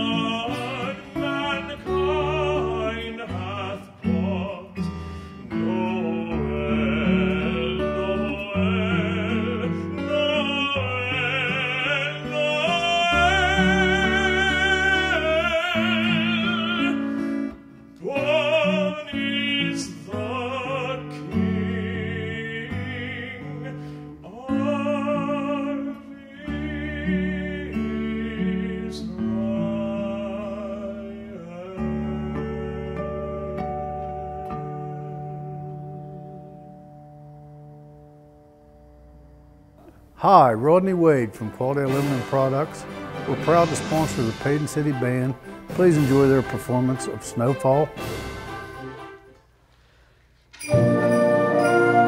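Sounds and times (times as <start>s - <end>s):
person singing with vibrato: 0.0s - 36.6s, 50.6s - 52.0s.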